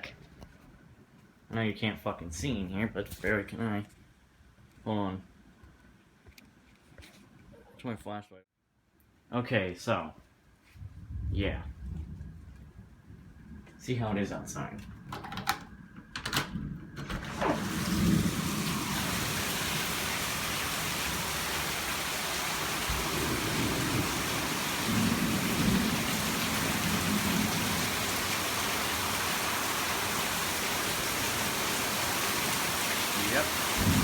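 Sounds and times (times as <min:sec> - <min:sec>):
thunder rumbling: 0:10.7 - 0:34.0
heavy rain pouring: 0:17.0 - 0:34.0.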